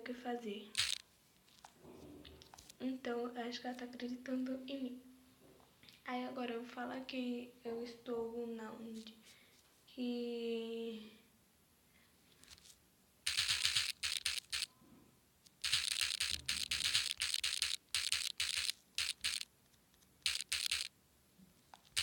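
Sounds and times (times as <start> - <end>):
thumbs typing on smartphone: 0.8 - 1.0, 13.3 - 14.7, 15.5 - 19.5, 20.2 - 20.9, 21.8 - 22.0.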